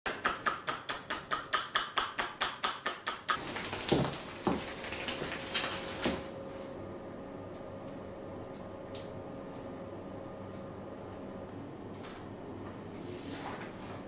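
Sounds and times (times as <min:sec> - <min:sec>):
rapid hand slaps on body: 0:00.1 - 0:05.7.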